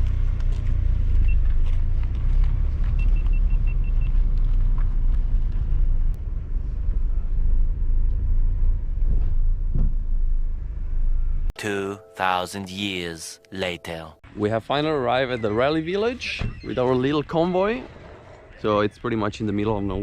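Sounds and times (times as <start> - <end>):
car engine and road rumble: 0.0 - 11.6.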